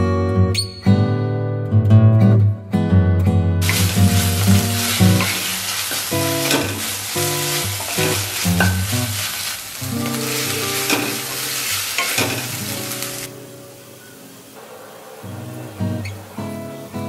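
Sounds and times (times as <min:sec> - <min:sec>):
acoustic guitar music: 0:00.0 - 0:17.0
spatula scraping a pan: 0:03.6 - 0:13.3
food sizzling in a pan: 0:03.6 - 0:17.0.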